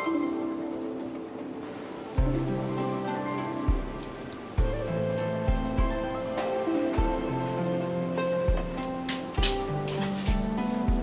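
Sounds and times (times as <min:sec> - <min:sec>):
held instrumental notes: 0:00.0 - 0:11.0
low drum beat: 0:02.2 - 0:02.8, 0:03.6 - 0:04.0, 0:04.6 - 0:06.4, 0:07.0 - 0:07.6, 0:08.5 - 0:08.8, 0:09.4 - 0:11.0.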